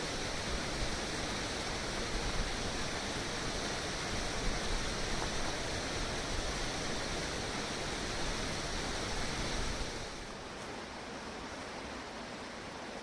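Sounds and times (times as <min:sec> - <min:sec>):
small waterfall splashing: 0:00.0 - 0:13.0.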